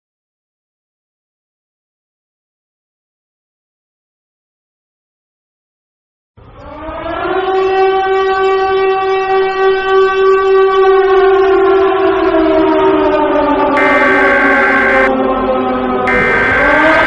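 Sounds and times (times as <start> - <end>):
civil defense siren wailing: 6.5 - 17.0
higher steady tone: 13.8 - 15.2, 16.1 - 17.0.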